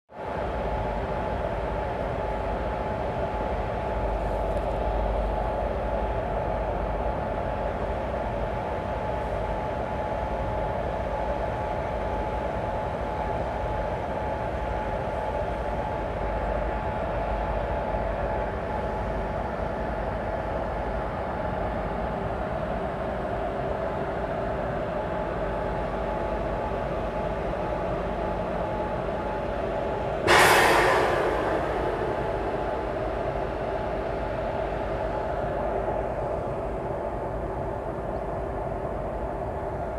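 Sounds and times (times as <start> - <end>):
electric locomotive whirring hum: 0.1 - 39.9
loud air hiss: 30.3 - 33.4.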